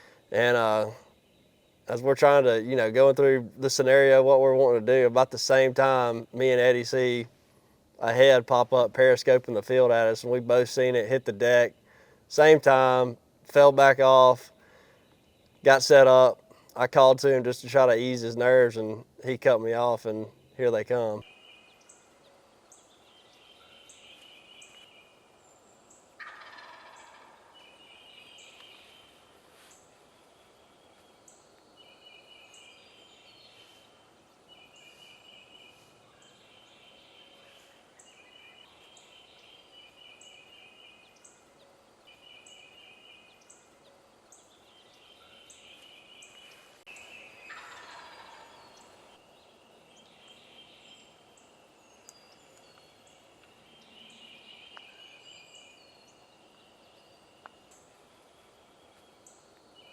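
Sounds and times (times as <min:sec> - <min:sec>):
wild turkeys gobbling: 0:25.9 - 0:28.9, 0:47.0 - 0:49.2
turkey call falling in pitch: 0:26.2 - 0:27.6, 0:47.5 - 0:48.6.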